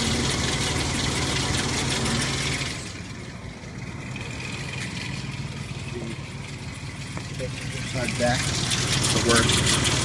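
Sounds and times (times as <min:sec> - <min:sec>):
engine idling with rattle: 0:00.0 - 0:10.0.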